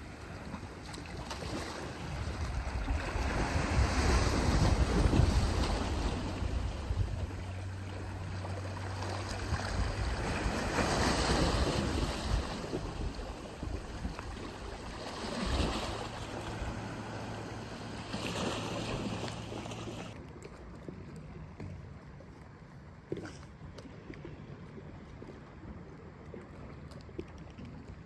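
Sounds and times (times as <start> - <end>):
low steady hum: 0.0 - 20.2
sea waves washing in: 0.0 - 20.2.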